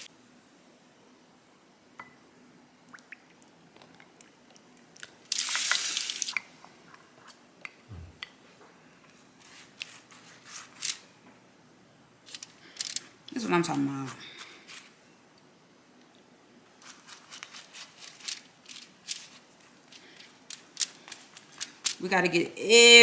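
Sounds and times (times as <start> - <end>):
low thump: 7.9 - 8.2.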